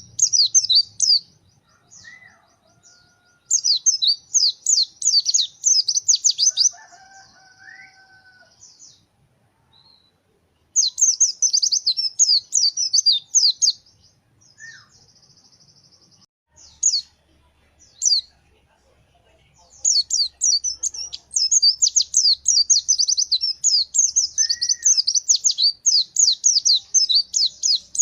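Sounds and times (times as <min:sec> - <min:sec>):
bird chirping song: 0:00.0 - 0:28.0
high thin bird trill: 0:19.8 - 0:28.0
lower whistled bird calls: 0:19.9 - 0:28.0.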